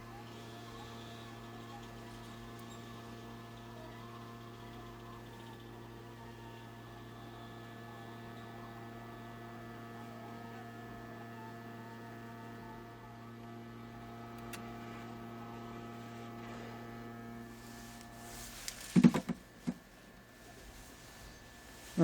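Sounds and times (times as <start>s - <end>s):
electrical mains hum: 0.0s - 22.0s.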